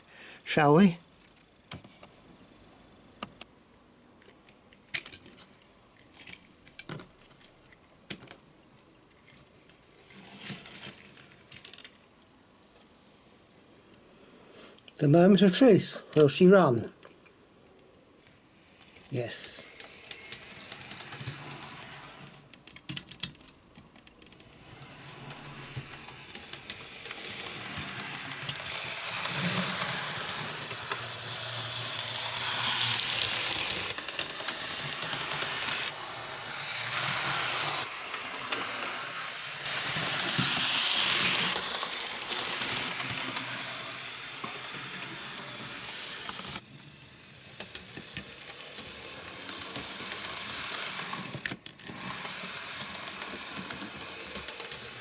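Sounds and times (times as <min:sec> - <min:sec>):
model train motor whirring: 0:18.5 - 0:22.6, 0:24.0 - 0:55.0.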